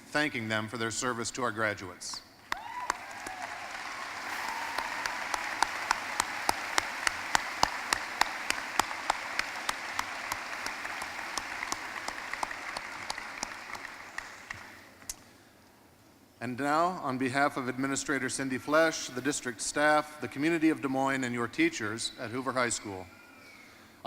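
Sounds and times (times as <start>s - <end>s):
large crowd applauding: 2.4s - 15.0s
nearby hands clapping loudly: 2.5s - 15.2s.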